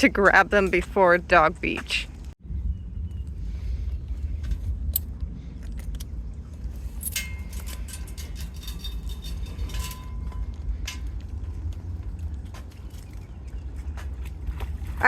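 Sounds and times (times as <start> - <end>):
steady low rumble: 0.0 - 15.0
metal dog tags jingling: 7.0 - 11.2.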